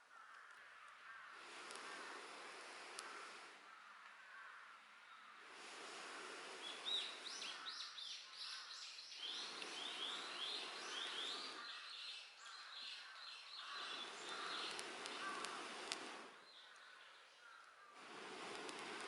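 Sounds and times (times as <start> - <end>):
faint outdoor hiss: 0.0 - 19.0
songbird whistling: 6.6 - 15.5.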